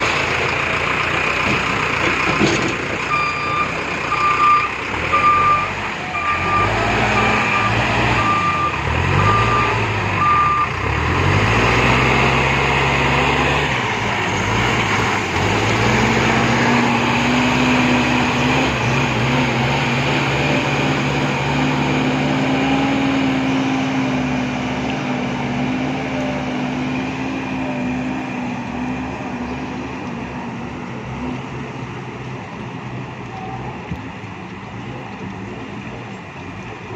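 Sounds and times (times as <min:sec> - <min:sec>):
diesel engine running: 0:00.0 - 0:36.9
reversing alarm beeping: 0:03.1 - 0:10.8.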